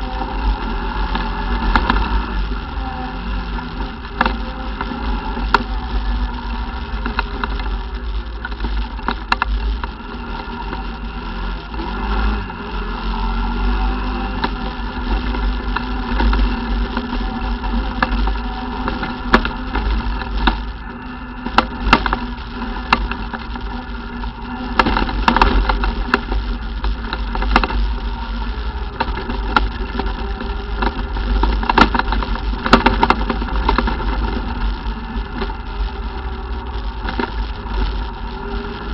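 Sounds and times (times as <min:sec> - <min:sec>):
atv engine running: 0:00.0 - 0:38.9
heavy low rumble: 0:00.0 - 0:38.9
sharp knocks and rattles: 0:21.4 - 0:38.1.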